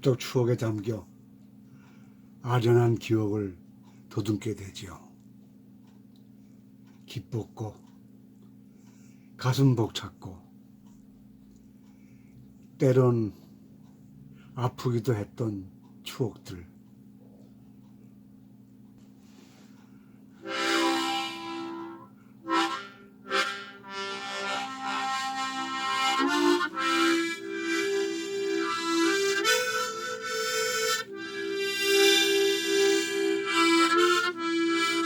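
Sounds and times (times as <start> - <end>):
faint steady hum: 0.0 - 35.0
free-reed instrument melody: 20.4 - 35.0.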